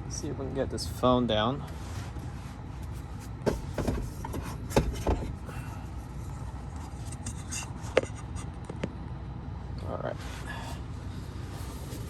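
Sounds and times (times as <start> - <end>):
low hum in car cabin: 0.0 - 12.0
light handling knocks and clicks: 3.4 - 5.5.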